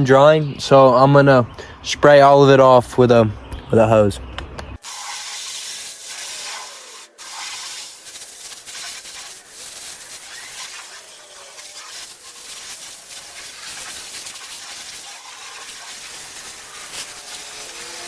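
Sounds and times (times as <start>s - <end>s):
garden hose spraying water: 4.8s - 18.0s.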